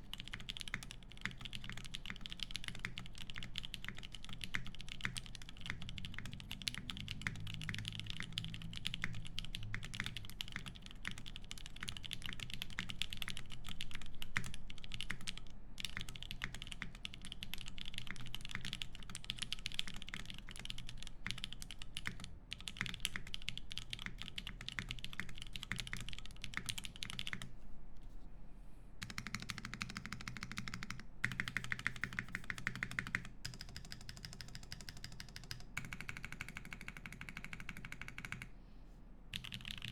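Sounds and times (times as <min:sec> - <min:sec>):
mechanical keyboard typing: 0:00.1 - 0:27.5, 0:29.0 - 0:38.5, 0:39.3 - 0:39.9.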